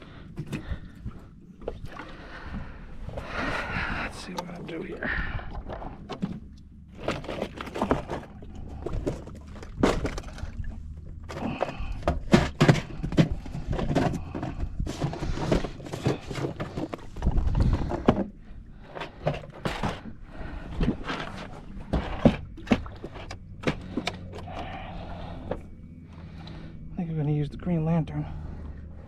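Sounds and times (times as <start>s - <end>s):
fishing tackle knocking and rustling: 5.3s - 25.8s.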